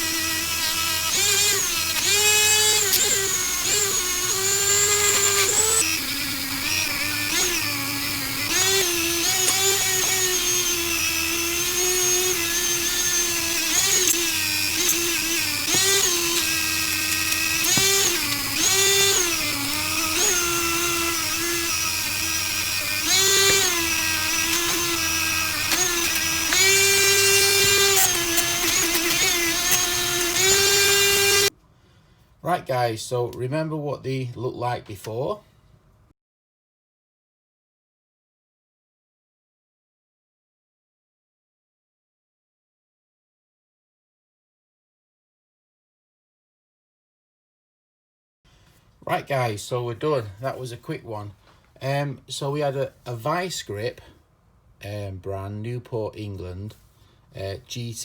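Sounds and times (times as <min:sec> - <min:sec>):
power tool whining: 0:00.0 - 0:31.5.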